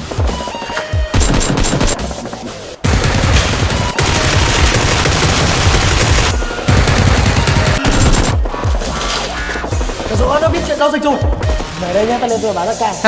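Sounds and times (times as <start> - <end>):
background music: 0.0 - 13.0
automatic gunfire bursts: 1.1 - 2.1, 2.8 - 8.4.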